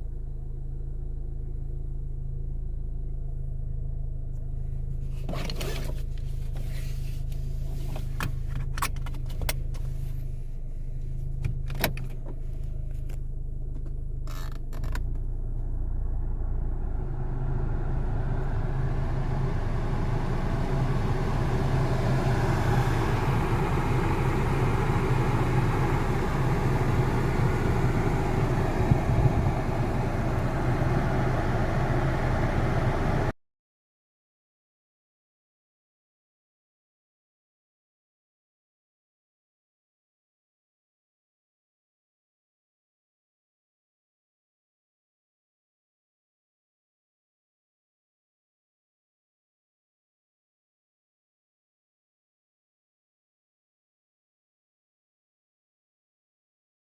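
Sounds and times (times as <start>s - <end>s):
car engine idling: 0.0s - 33.3s
car accelerating with road noise: 9.0s - 33.3s.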